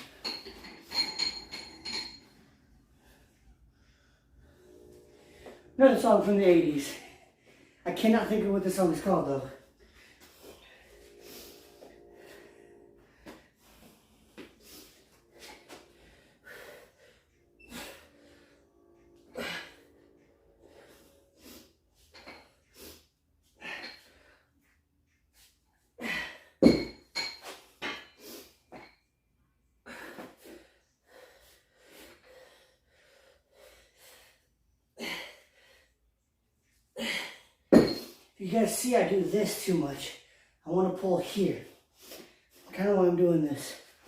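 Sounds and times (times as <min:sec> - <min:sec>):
man breathing hard: 0:09.7 - 0:18.8, 0:29.8 - 0:36.0.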